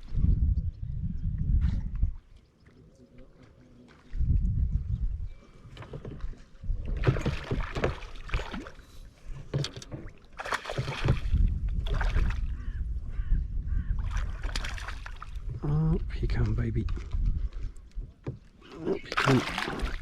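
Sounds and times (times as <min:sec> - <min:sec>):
fish thrashing in water: 0:06.7 - 0:08.8, 0:09.6 - 0:12.5, 0:14.0 - 0:15.5, 0:19.0 - 0:20.0.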